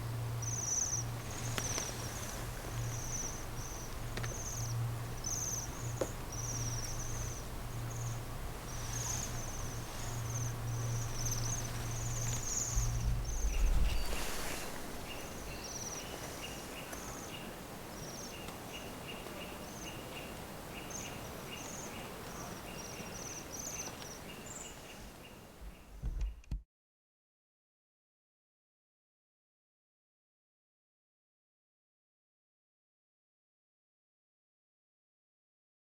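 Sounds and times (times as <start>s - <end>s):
low hum: 0.0s - 16.1s
birds high trilling calls: 0.4s - 17.4s.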